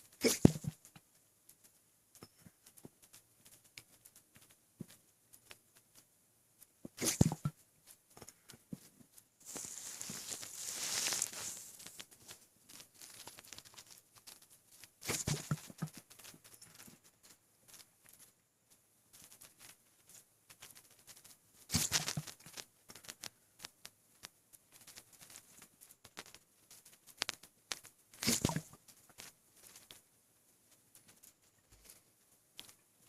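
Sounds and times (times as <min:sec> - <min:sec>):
faint crackles and rustles: 0:00.0 - 0:33.0
breathy rustle: 0:06.9 - 0:18.3.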